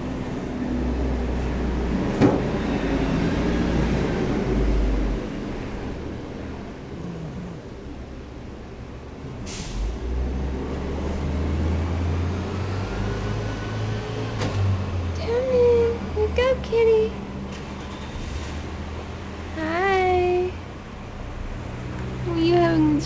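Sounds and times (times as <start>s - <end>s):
cat snoring: 6.3s - 8.4s.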